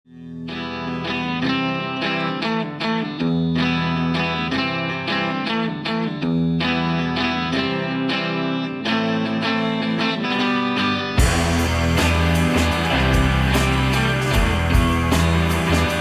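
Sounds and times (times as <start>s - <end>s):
plucked guitar: 0.1s - 16.0s
sustained bass: 11.2s - 16.0s.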